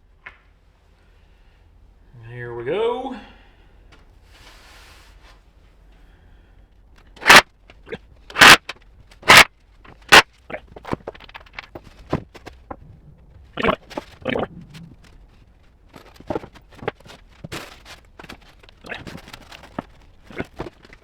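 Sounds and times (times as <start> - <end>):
clicks and rattles of tools: 7.0 - 12.9, 15.9 - 21.0.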